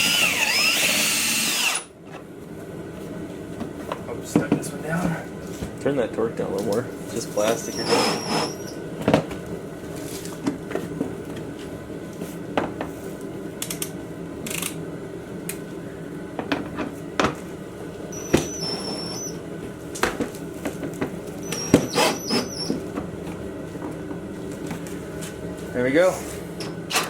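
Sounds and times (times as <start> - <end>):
cordless drill driving screws: 0.0 - 1.9, 7.7 - 8.7, 21.4 - 22.7.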